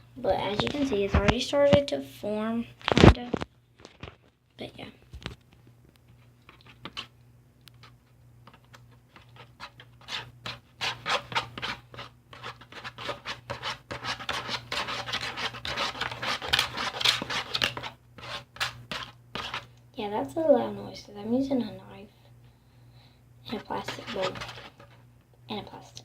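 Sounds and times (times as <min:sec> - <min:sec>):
plastic knife scraping plastic bowl: 0:07.8 - 0:19.7, 0:23.5 - 0:25.0.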